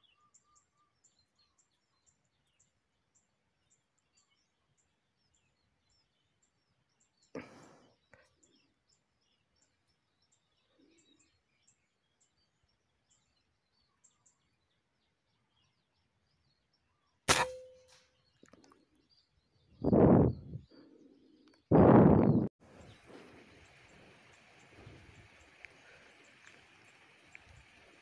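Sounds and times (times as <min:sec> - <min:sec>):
faint bird chirps: 0:00.0 - 0:03.2, 0:03.8 - 0:28.0
air rifle shot: 0:17.3 - 0:17.8
rustle: 0:22.6 - 0:28.0.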